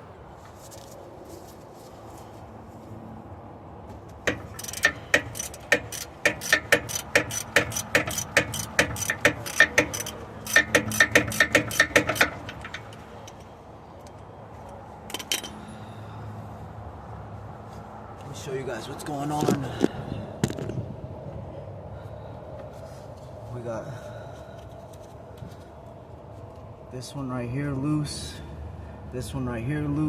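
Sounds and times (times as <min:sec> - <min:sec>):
ratchet wrench clicking: 0:04.2 - 0:13.5, 0:15.1 - 0:15.6.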